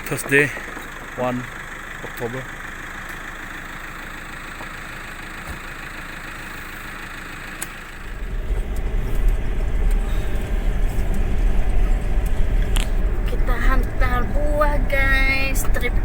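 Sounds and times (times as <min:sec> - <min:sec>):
vehicle engine running: 0:00.0 - 0:16.0
loud uneven low rumble: 0:07.6 - 0:16.0.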